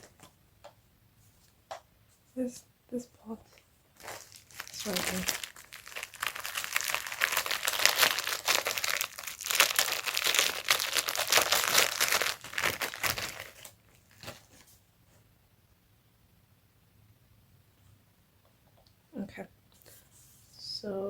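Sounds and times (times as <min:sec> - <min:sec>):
packaging crinkling: 0:04.0 - 0:14.6.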